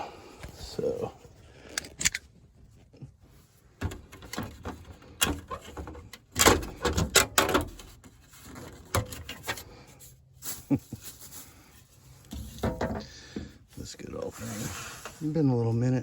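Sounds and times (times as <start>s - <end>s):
filter cabinet knocks and clicks: 12.3s - 13.5s.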